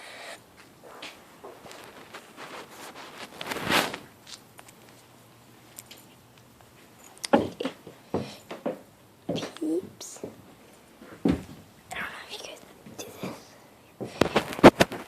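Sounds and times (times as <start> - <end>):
plastic handling rustle: 1.0 - 5.1.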